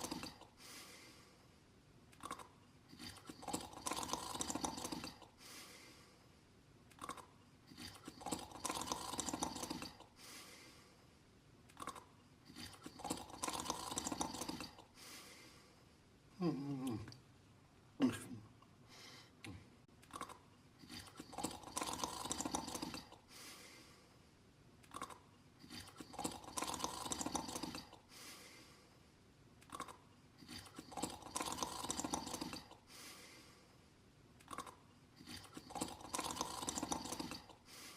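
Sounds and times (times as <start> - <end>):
person snoring: 0.0 - 1.0, 2.2 - 5.4, 7.0 - 10.6, 11.8 - 14.9, 16.4 - 17.2, 20.2 - 23.7, 25.0 - 28.7, 29.7 - 33.6, 34.5 - 37.9
breathy breaths: 0.0 - 1.6, 2.3 - 6.5, 7.7 - 11.3, 12.4 - 16.1, 18.8 - 19.8, 20.8 - 24.4, 25.6 - 29.2, 30.4 - 34.0, 34.6 - 37.9.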